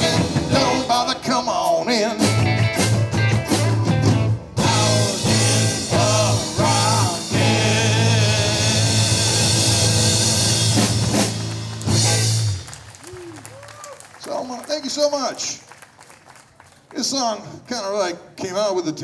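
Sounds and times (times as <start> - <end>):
person singing: 0.0 - 2.6, 4.6 - 10.8
live rock band: 0.0 - 13.4.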